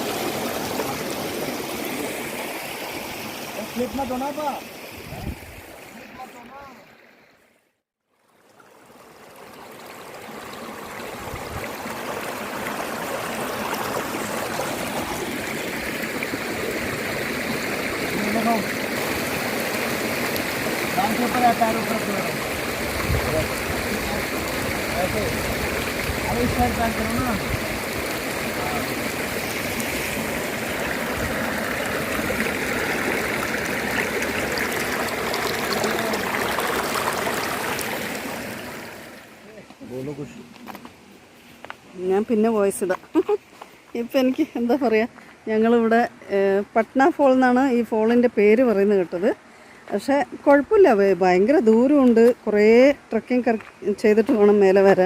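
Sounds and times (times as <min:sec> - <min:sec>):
waterfall rushing: 0:00.0 - 0:07.0, 0:10.0 - 0:39.5.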